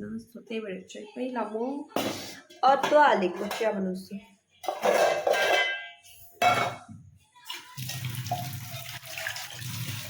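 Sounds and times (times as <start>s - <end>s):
water running from tap: 7.6s - 10.0s.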